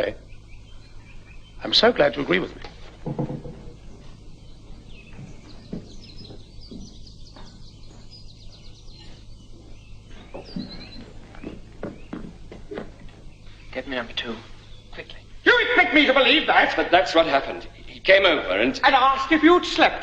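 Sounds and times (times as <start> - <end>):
small birds chirping: 0.0 - 20.0
steady low hum: 0.0 - 20.0
soft knocks: 2.6 - 13.3.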